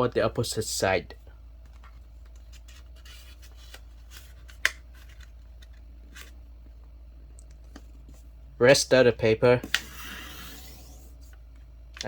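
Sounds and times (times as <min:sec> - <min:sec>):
paper rustling and creasing: 0:01.7 - 0:06.4.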